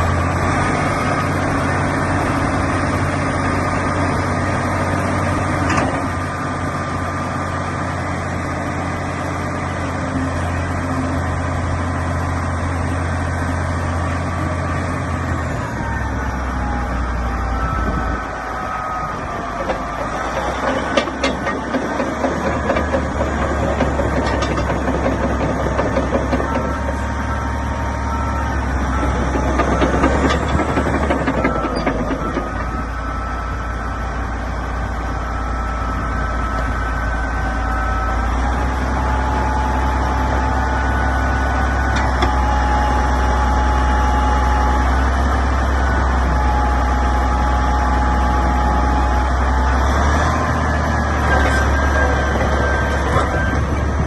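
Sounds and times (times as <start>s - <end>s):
bulldozer diesel engine running: 0.0s - 54.0s
clanking and rattling: 19.4s - 27.2s, 29.0s - 32.8s.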